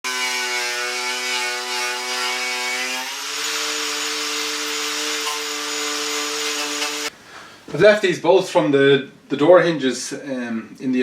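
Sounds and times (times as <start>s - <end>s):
power tool motor whine: 0.1s - 7.1s.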